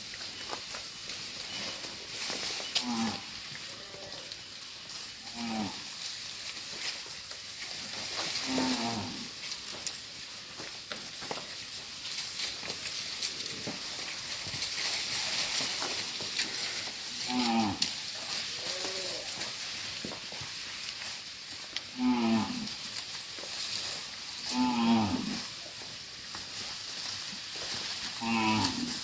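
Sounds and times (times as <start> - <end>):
cattle mooing: 5.2 - 5.8, 8.4 - 9.3, 17.2 - 19.4, 21.9 - 22.7, 24.4 - 25.5, 28.2 - 29.0.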